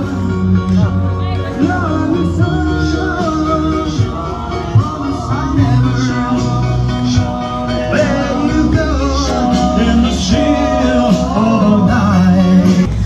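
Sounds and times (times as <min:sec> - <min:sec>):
band with steady bass: 0:00.0 - 0:13.0
person singing: 0:00.0 - 0:13.0.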